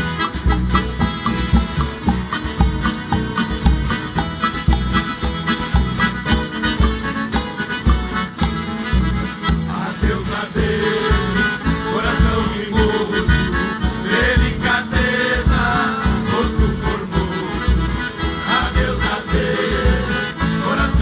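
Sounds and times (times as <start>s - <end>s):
live band playing country music: 0.0s - 21.0s
steady bass beat: 0.0s - 21.0s.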